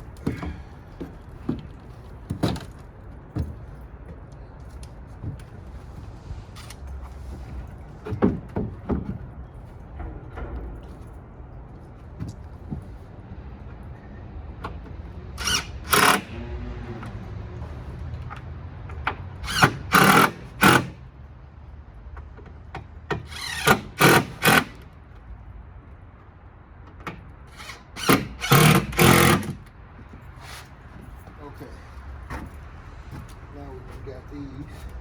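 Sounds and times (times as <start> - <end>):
power drill bursts: 15.4 - 16.4, 19.4 - 21.0, 23.3 - 24.8, 27.5 - 29.6.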